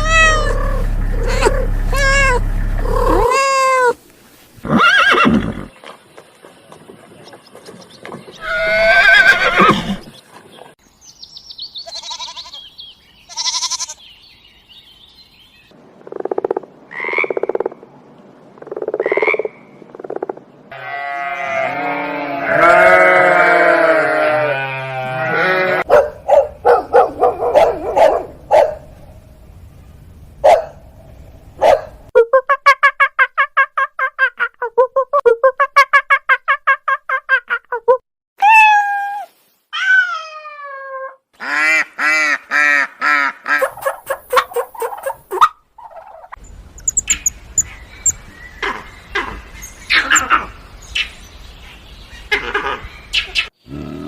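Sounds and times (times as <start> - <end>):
animal calls: 0.0 - 4.0, 43.0 - 50.6.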